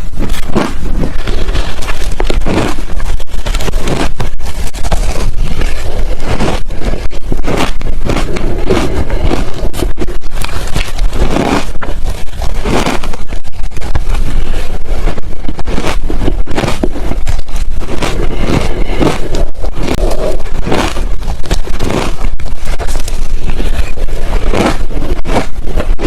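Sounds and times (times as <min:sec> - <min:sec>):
low rumble: 0:00.0 - 0:26.0
ice crunching while chewed: 0:00.2 - 0:26.0.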